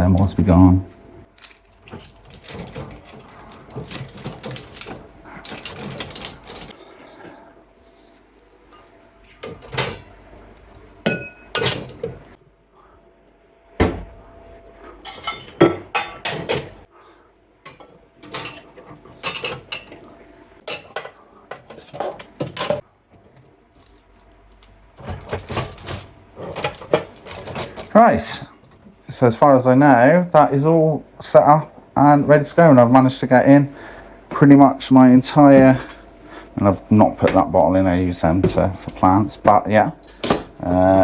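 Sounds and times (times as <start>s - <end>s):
cutlery and dishes clattering: 9.4s - 10.1s, 11.1s - 12.2s, 15.0s - 16.9s, 17.7s - 20.0s, 20.7s - 22.8s, 25.0s - 27.9s, 40.0s - 40.6s.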